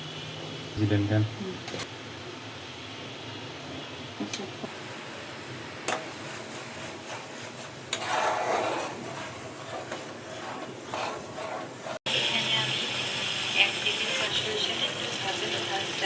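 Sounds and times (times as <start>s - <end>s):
utensil scraping: 5.9s - 12.1s.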